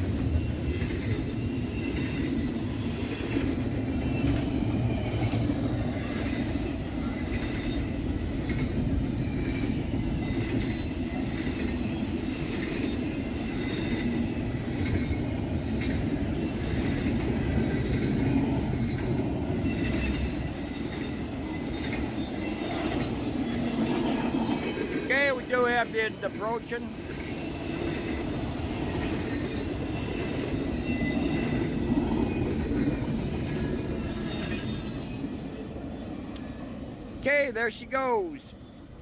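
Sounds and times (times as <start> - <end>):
train wheels rumbling on rails: 0.0 - 37.8
faint wheel squeal: 0.2 - 3.4, 9.2 - 15.2, 19.6 - 24.6, 27.3 - 32.6, 33.6 - 35.2.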